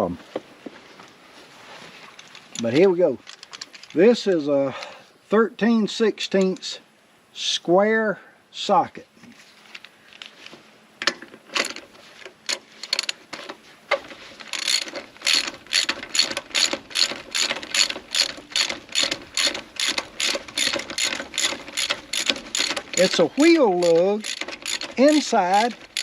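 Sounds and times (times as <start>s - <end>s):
hand ratchet clicking: 14.4s - 26.0s.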